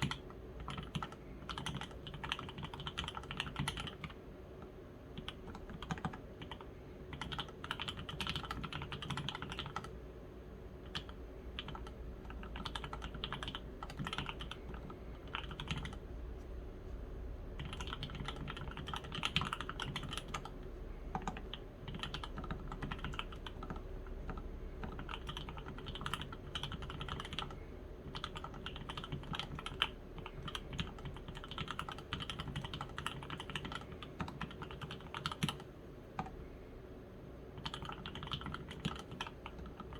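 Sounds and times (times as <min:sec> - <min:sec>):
mechanical keyboard typing: 0:00.0 - 0:04.2, 0:05.1 - 0:10.0, 0:10.8 - 0:16.0, 0:17.6 - 0:36.4, 0:37.6 - 0:39.9.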